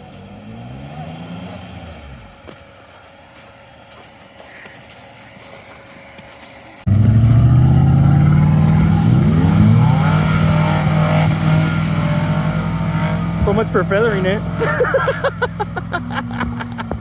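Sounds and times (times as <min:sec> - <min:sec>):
off-road truck engine: 0:00.0 - 0:17.0
engine revved hard: 0:06.9 - 0:14.7.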